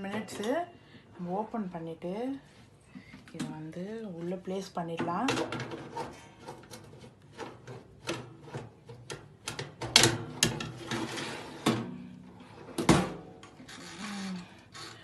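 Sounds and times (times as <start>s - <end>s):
oven door and tray clatter: 9.0s - 12.0s.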